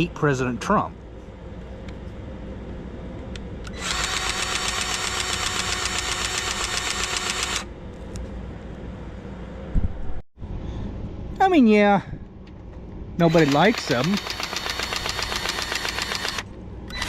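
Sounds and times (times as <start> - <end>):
motor-driven tool buzzing: 3.7 - 7.7, 13.2 - 17.0.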